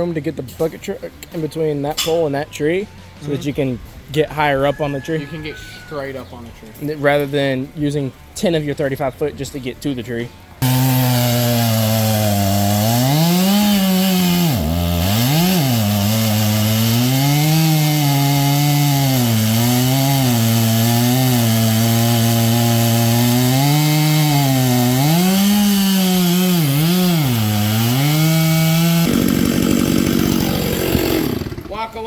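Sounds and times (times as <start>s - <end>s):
small gasoline engine running: 10.6s - 31.7s.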